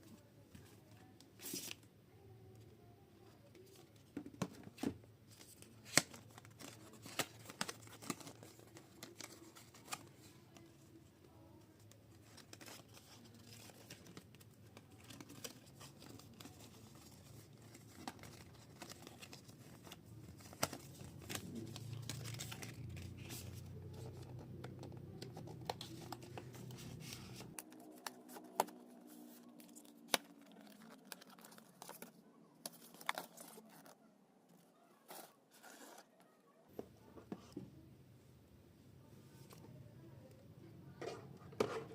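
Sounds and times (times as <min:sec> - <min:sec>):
wrapping tearing and crinkling: 0:12.2 - 0:24.2, 0:25.2 - 0:34.0.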